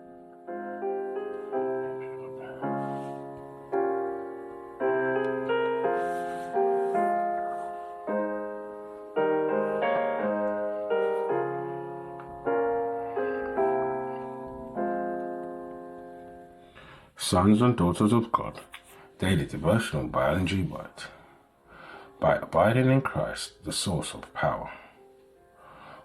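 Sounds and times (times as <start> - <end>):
slow solo piano chords: 0.0 - 16.9.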